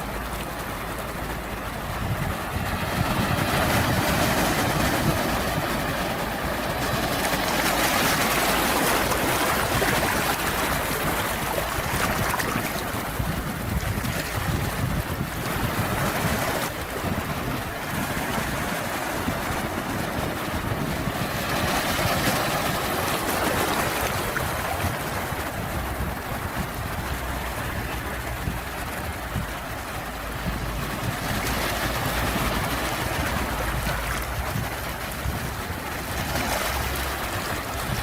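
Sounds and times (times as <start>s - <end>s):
sea surf waves: 0.0s - 38.0s.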